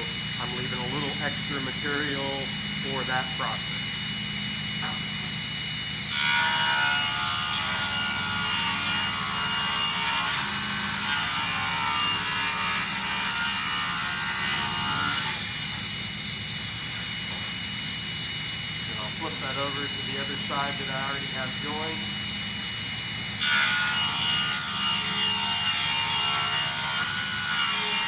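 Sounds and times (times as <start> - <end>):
table saw running: 0.0 - 28.0
table saw ripping a board: 6.1 - 15.9, 23.4 - 28.0.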